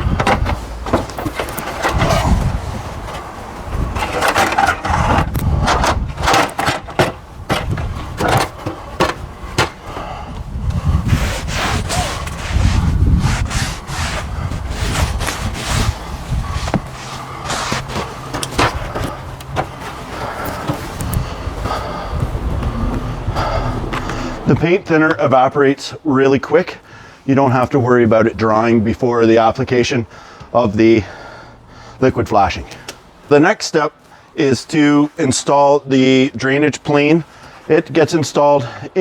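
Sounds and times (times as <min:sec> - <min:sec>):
scrubbing wood: 0:00.0 - 0:25.7
irregular knocks and clicks: 0:03.0 - 0:10.4, 0:16.6 - 0:24.6.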